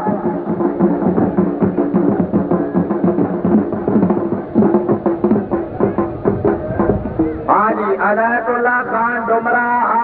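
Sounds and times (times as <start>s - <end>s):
drums beating fast rhythm: 0.0s - 8.7s
sustained melody line: 3.3s - 8.0s.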